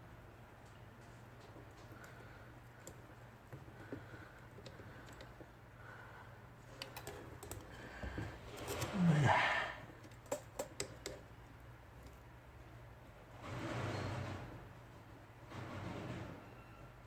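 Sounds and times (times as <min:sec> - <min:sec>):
steady low hum: 0:00.0 - 0:13.5.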